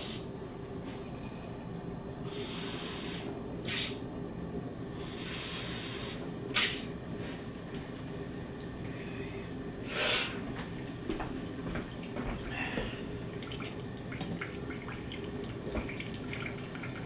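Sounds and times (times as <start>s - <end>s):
faucet water running: 13.1s - 17.0s.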